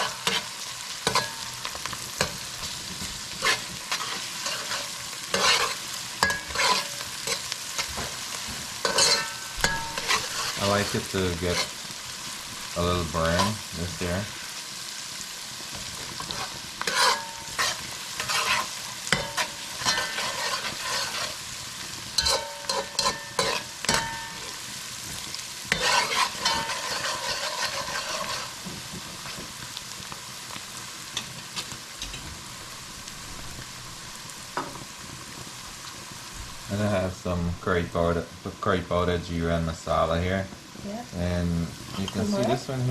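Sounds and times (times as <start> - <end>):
onions sizzling in oil: 0.0 - 42.9
spoon scraping a pot: 2.2 - 8.2, 8.8 - 11.8, 16.2 - 21.4, 22.2 - 24.6, 25.7 - 28.6.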